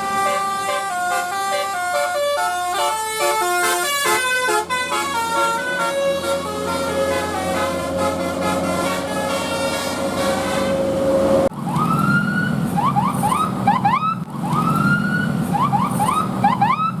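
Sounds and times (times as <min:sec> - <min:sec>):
multi-tone bus horn melody: 0:00.0 - 0:11.5.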